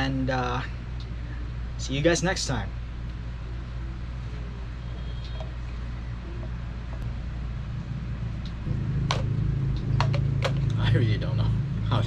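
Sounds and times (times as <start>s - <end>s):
low hum: 2.7s - 12.0s.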